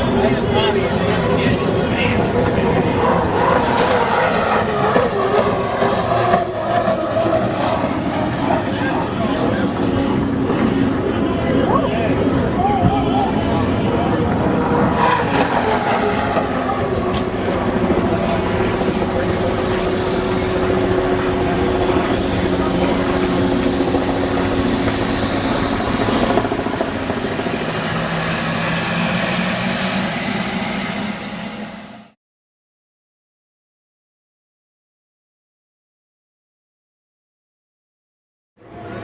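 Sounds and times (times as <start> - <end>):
turbine hydroplane whine: 0.0 - 32.2
high whining tones climbing: 1.9 - 11.6, 12.2 - 32.2.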